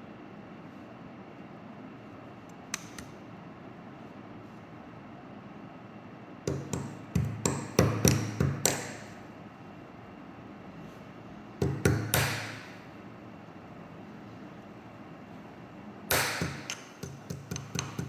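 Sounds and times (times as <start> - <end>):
metal-on-metal taps: 16.1 - 18.0.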